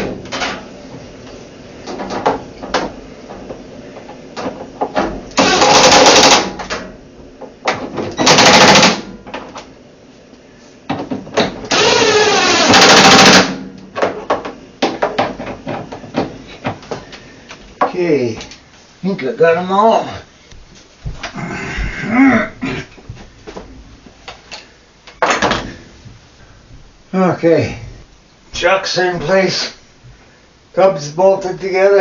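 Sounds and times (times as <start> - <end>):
power driver running: 5.3 - 6.7, 11.6 - 13.6.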